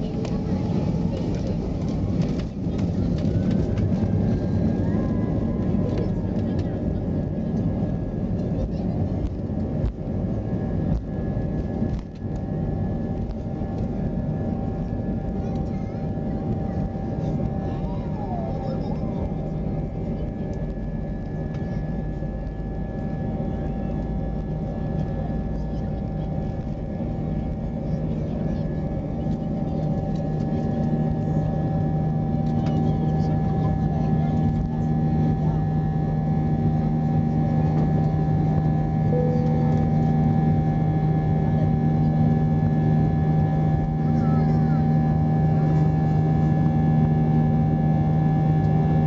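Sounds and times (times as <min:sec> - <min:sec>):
jet engines running: 0:00.0 - 0:49.0.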